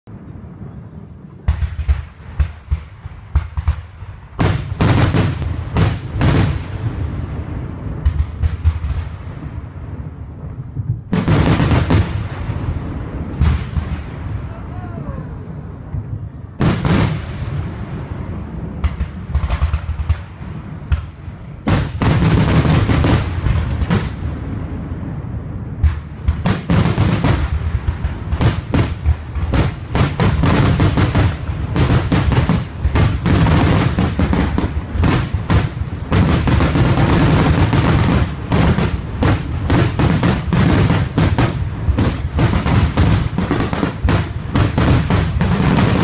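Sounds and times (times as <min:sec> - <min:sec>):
fireworks crackle: 0:00.4 - 0:14.6, 0:15.4 - 0:46.0
low rumble of distant booms: 0:15.4 - 0:46.0.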